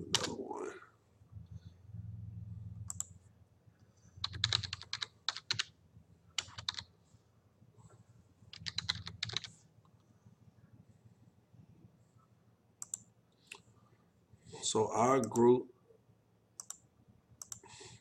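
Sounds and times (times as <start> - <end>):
computer keyboard typing: 0.0 - 0.4, 2.8 - 3.2, 4.2 - 5.7, 6.4 - 6.9, 8.5 - 9.6, 12.8 - 13.1, 17.4 - 17.6.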